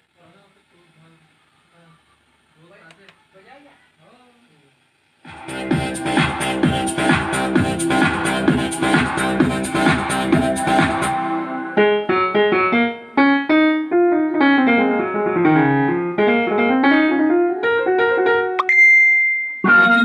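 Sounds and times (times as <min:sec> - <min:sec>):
keyboard chord: 0:05.3 - 0:20.0
keyboard rhythm pattern: 0:05.3 - 0:20.0
keyboard single notes: 0:11.2 - 0:20.0.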